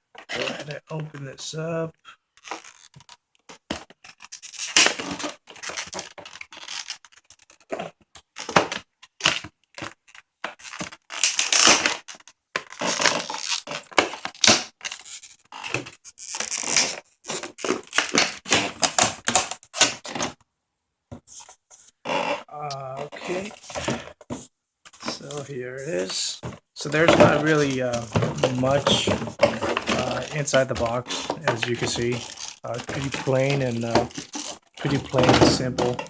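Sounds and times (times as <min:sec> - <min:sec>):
cardboard box scraping and tearing: 0:03.7 - 0:08.6, 0:09.2 - 0:20.3, 0:23.0 - 0:24.4, 0:25.0 - 0:36.0.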